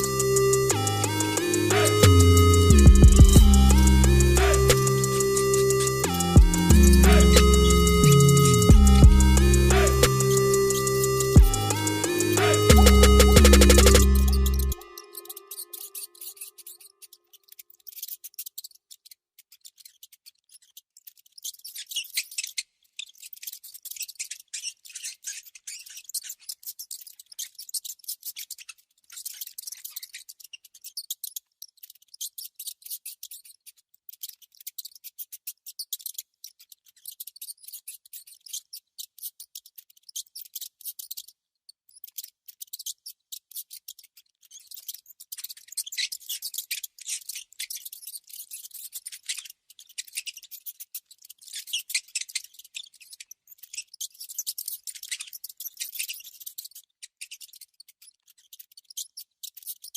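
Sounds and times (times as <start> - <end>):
high-pitched scratching and clicking: 0.0 - 16.8.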